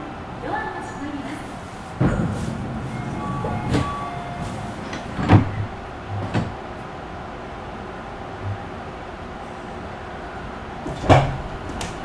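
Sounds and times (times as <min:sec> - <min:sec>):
sliding doors shutting: 0:00.0 - 0:12.0
train car low hum: 0:00.0 - 0:12.0
short chime: 0:02.0 - 0:05.9.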